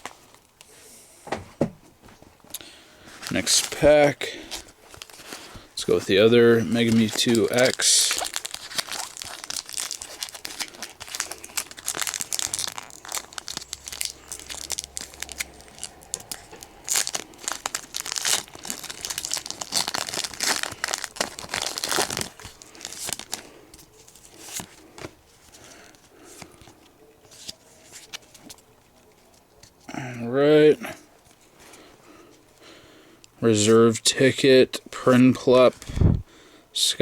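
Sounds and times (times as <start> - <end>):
foil wrapper crinkling and tearing: 3.1 - 29.4.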